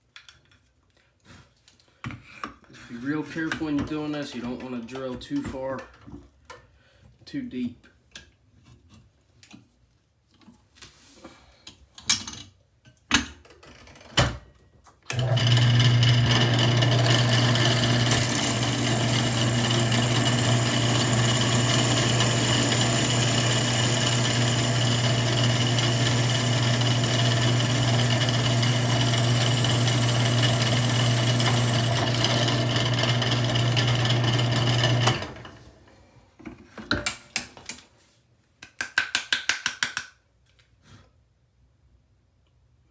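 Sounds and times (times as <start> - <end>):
drill press humming: 15.1 - 35.6.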